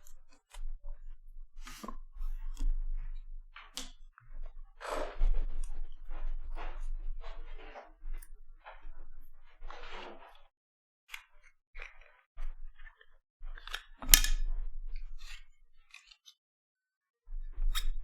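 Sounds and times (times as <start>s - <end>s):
sharp plastic snap: 14.0s - 14.4s.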